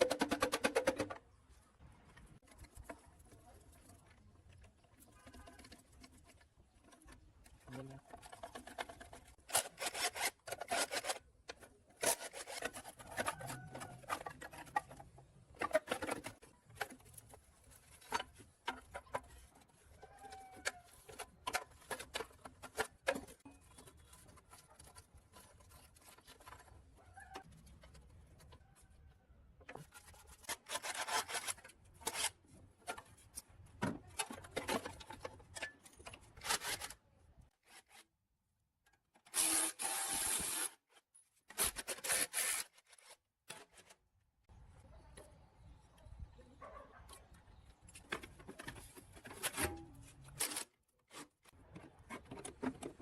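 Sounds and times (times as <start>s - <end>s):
hand tool scraping: 7.0s - 27.0s, 29.7s - 33.4s.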